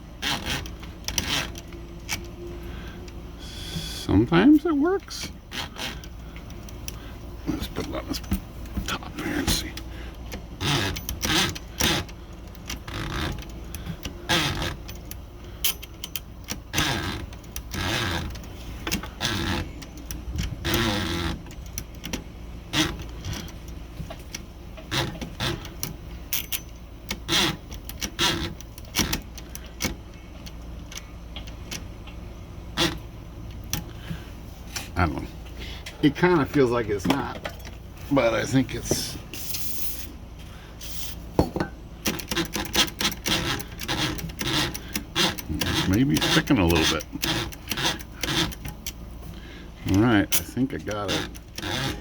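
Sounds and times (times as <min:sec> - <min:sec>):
typewriter parts clicking: 0:42.0 - 0:49.0.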